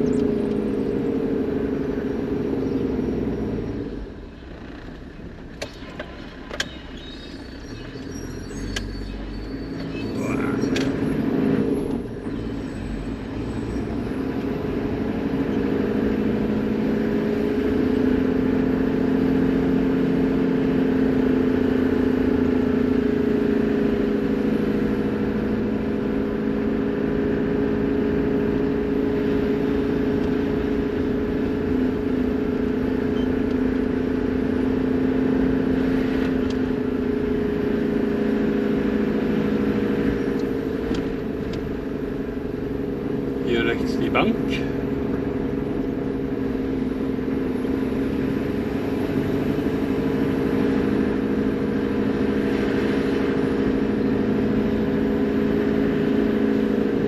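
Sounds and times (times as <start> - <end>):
diesel engine driving: 0.0 - 57.0.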